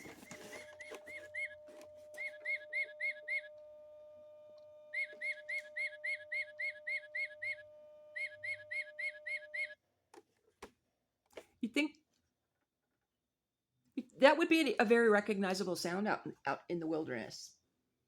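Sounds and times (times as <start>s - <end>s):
faint steady hum: 0.0s - 9.8s
bird whistled notes: 4.9s - 9.8s.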